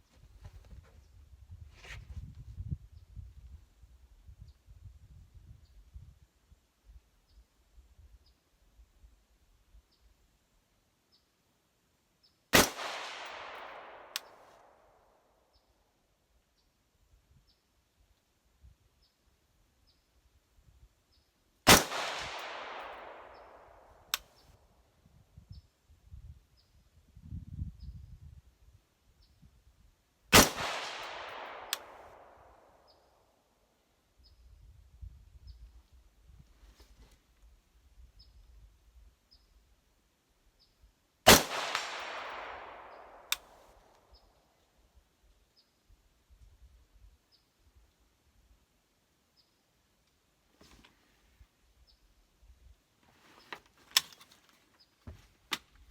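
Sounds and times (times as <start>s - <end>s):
rifle shot with echo: 12.6s - 15.0s, 21.7s - 24.3s, 30.3s - 32.9s, 41.3s - 43.6s
sharp crack: 12.6s - 15.0s, 21.7s - 24.3s, 30.4s - 32.8s, 41.3s - 44.1s.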